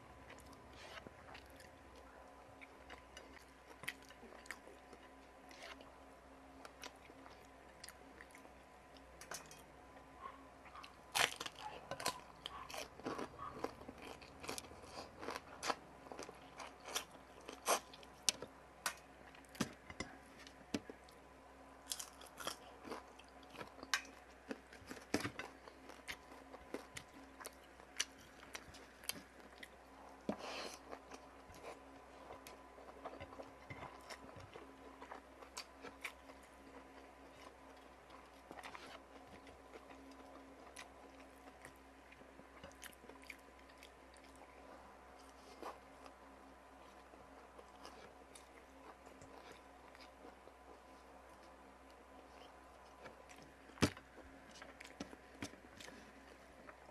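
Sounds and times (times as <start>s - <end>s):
person chewing and crunching: 10.7s - 19.7s, 21.8s - 56.9s.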